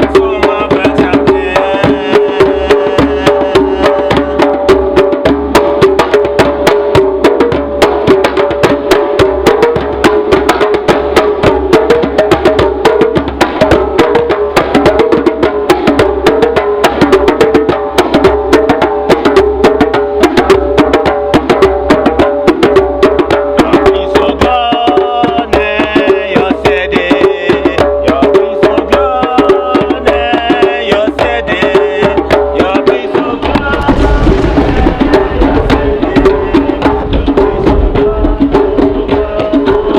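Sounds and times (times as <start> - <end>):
hand drums playing fast rhythm: 0.0 - 39.9.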